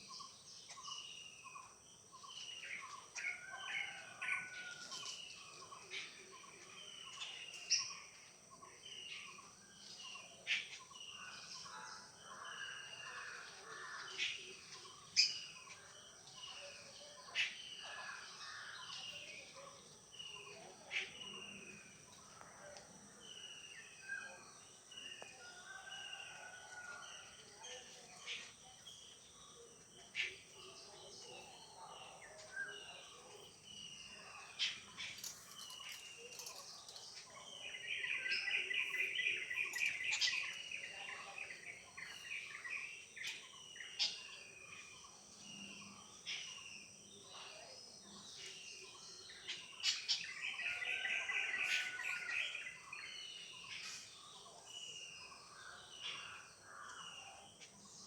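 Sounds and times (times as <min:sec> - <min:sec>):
birds chirping: 0:00.0 - 0:58.0
faint high insect drone: 0:00.0 - 0:58.0
rapid trilling bird chatter: 0:00.0 - 0:58.0.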